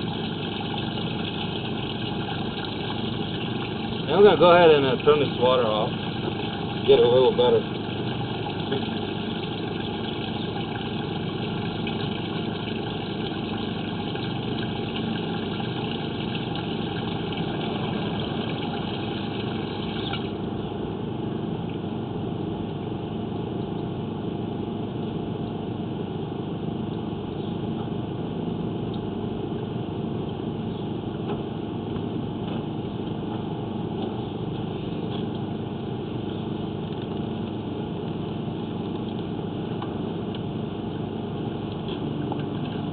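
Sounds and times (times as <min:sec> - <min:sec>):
water hissing into drain: 0:00.0 - 0:20.4.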